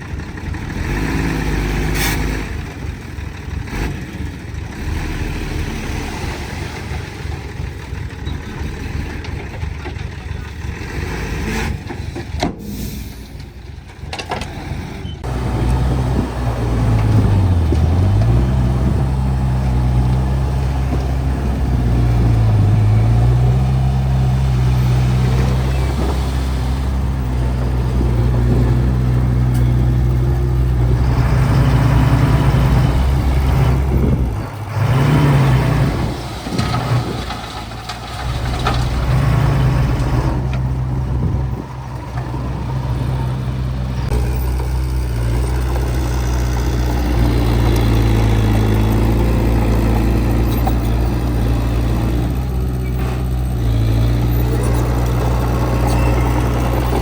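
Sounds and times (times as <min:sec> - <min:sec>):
heavy diesel engine under load: 0:00.0 - 0:57.0.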